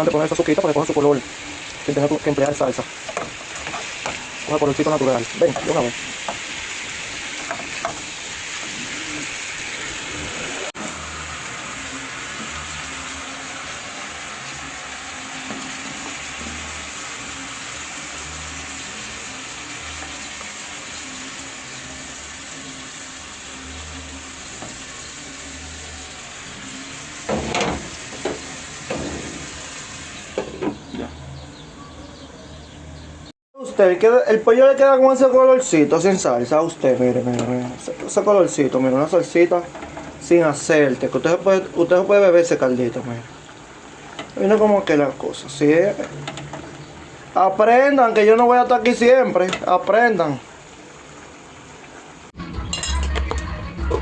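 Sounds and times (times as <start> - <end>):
chicken sizzling in a pot: 0.0 - 31.2, 33.7 - 54.0.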